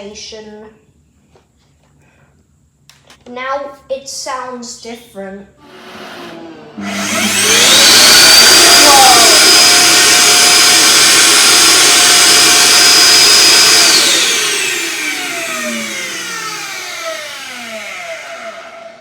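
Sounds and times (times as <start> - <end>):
docking station suction motor whine: 5.6 - 19.0
motor spinning down: 5.6 - 19.0.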